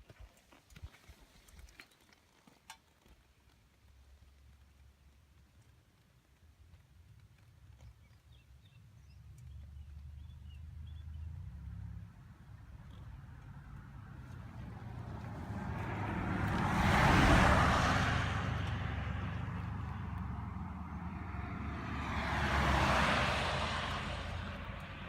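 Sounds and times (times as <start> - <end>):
vehicles passing by: 9.0 - 25.0.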